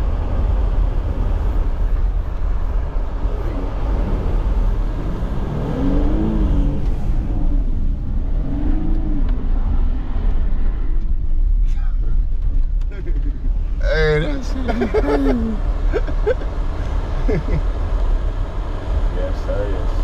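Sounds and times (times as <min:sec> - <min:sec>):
engine and tyres rumbling: 0:00.0 - 0:20.0.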